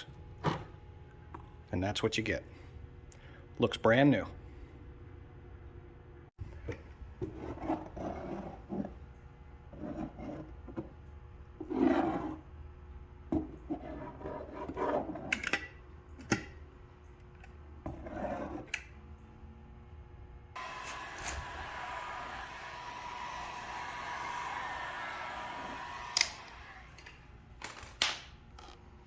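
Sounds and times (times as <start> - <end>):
sharp clicks: 25.8 - 27.2.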